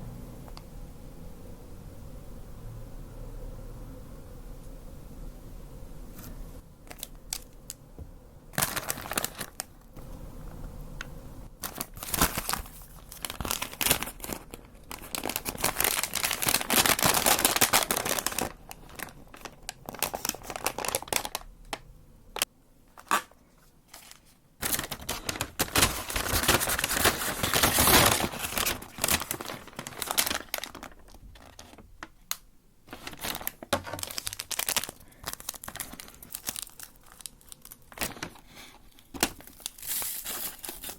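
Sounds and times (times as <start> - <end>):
paper packaging crinkling and tearing: 6.9 - 7.8, 8.5 - 10.1, 11.6 - 21.8, 22.4 - 40.9.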